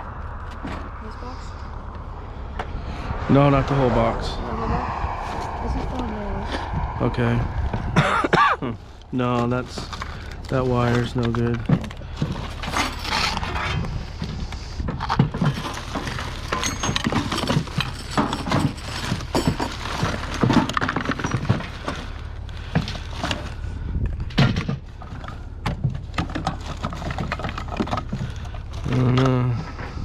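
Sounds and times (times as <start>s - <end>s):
low hum: 0.0s - 15.0s
scrap knocking and rattling: 7.7s - 30.0s.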